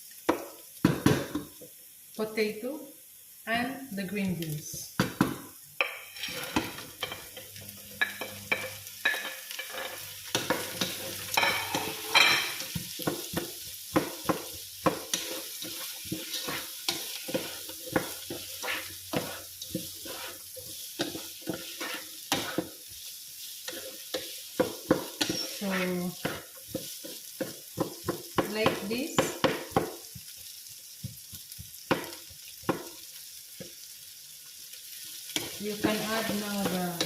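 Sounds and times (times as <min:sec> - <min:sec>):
vegetables sizzling in a frying pan: 0:00.0 - 0:37.0
spatula scraping against a pan: 0:05.8 - 0:28.8, 0:35.0 - 0:37.0.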